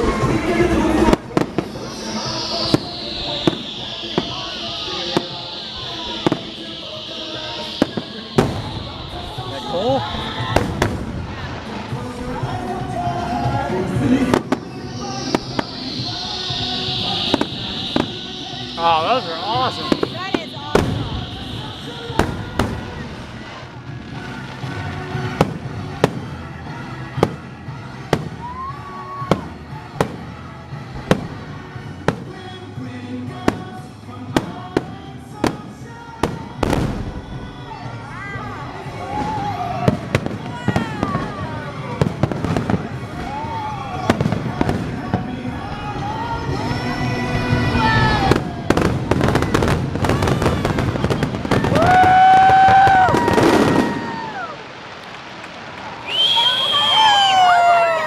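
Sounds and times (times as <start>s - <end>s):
soundtrack music: 0.0s - 33.4s
fireworks bursting: 0.0s - 58.0s.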